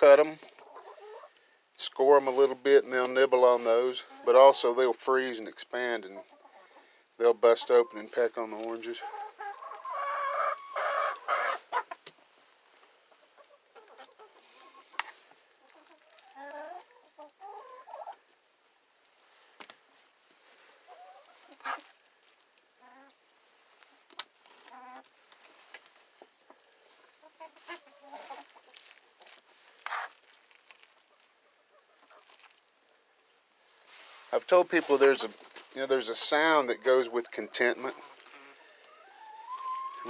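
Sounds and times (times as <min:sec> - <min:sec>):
hens clucking: 0:00.1 - 0:01.4, 0:02.0 - 0:18.3, 0:20.7 - 0:22.1, 0:22.7 - 0:23.2, 0:24.2 - 0:25.1, 0:26.1 - 0:30.2, 0:34.4 - 0:40.0.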